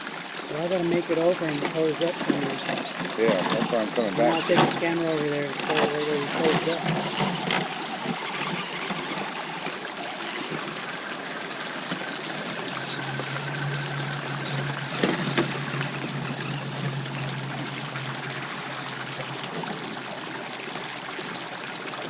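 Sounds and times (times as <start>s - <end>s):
river water rushing over rocks: 0.0s - 22.0s
low hum: 0.4s - 22.0s.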